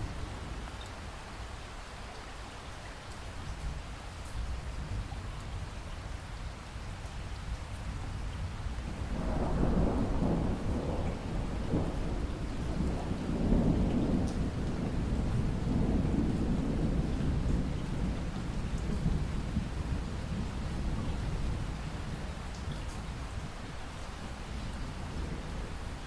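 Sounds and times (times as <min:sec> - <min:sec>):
rain hissing: 0:08.6 - 0:26.0
rolling thunder: 0:08.8 - 0:23.5.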